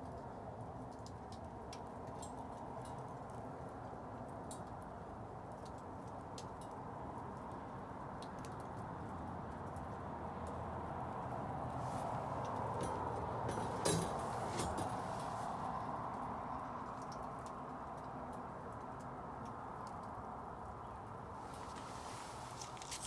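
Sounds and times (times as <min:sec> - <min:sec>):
flame rushing: 0:21.4 - 0:23.0.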